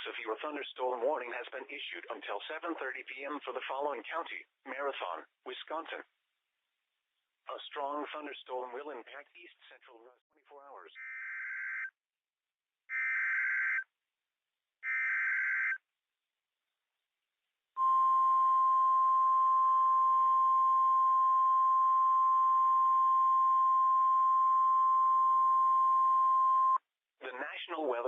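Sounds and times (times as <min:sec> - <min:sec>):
steady alarm tone: 0:12.9 - 0:13.8, 0:14.8 - 0:15.8.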